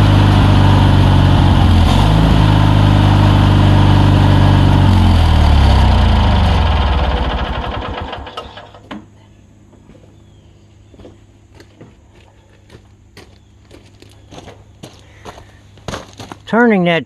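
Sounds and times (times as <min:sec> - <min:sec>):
lawnmower engine running: 0:00.0 - 0:08.9.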